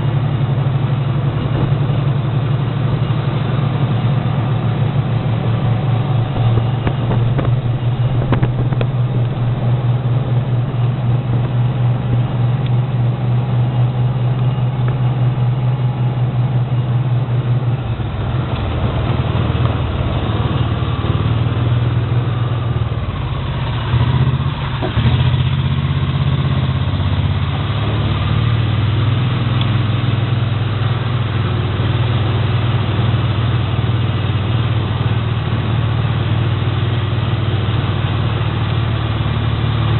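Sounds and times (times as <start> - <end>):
machine humming: 1.2 - 23.7.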